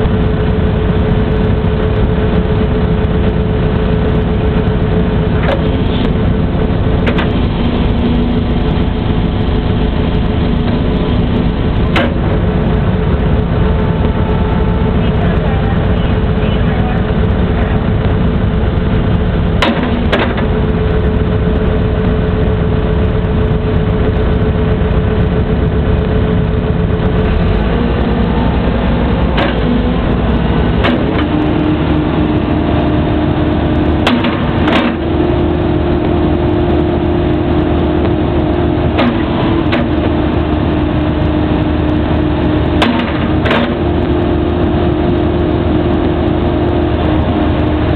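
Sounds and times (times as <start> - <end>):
excavator diesel engine running: 0.0 - 47.9
hydraulic whine: 0.0 - 47.9
sharp metallic knocks: 19.6 - 20.5, 34.0 - 35.2, 42.8 - 44.0.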